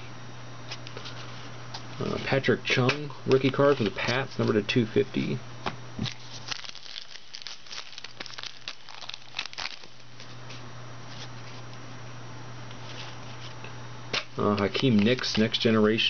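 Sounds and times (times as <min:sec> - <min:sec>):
steady low hum: 0:00.0 - 0:16.0
wrapper crinkling: 0:06.0 - 0:10.4.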